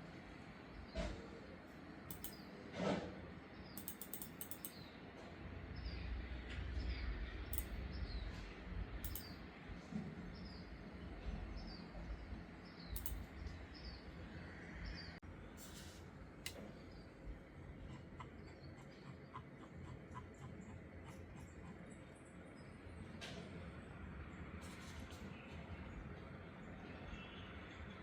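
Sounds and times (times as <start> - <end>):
mouse clicks: 2.1 - 2.4, 3.8 - 4.8, 7.5 - 7.8, 9.0 - 9.4, 13.0 - 13.3
bird chirping: 3.6 - 5.0, 9.0 - 9.4.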